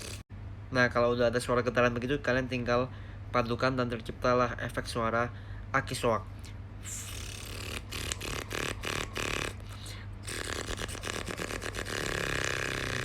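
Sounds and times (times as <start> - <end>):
person imitating car starter cranking: 10.3 - 13.0.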